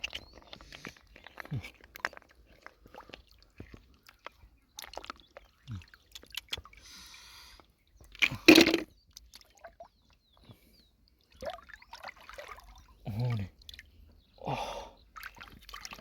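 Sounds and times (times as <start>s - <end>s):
water sloshing and dripping: 0.0s - 14.3s, 15.0s - 16.0s
water splash: 8.2s - 8.9s.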